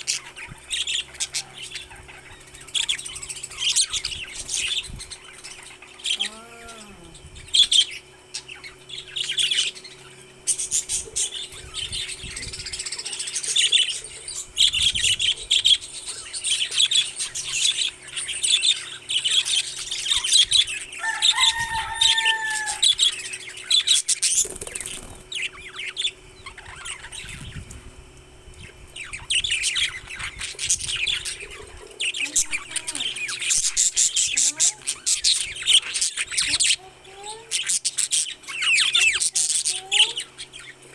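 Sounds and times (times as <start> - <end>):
parrot gliding call: 0.0 - 24.2
faint steady hum: 0.0 - 40.9
parrots chirping and chattering: 0.0 - 40.9.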